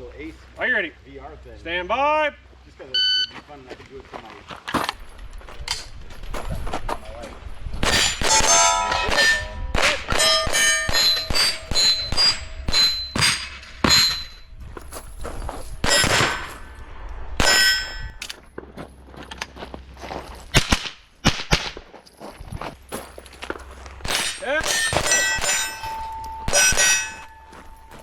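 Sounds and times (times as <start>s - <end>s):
rifle shots: 7.8s - 14.2s, 15.8s - 16.8s, 20.5s - 21.8s, 24.0s - 27.2s
steel plates clanging: 7.8s - 16.8s, 17.4s - 18.4s, 24.0s - 28.0s.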